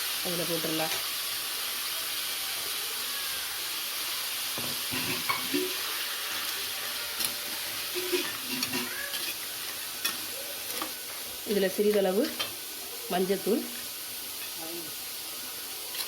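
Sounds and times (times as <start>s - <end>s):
food sizzling in hot oil: 0.0s - 16.0s
spoon stirring and knocking pan: 4.6s - 6.5s, 7.2s - 11.2s.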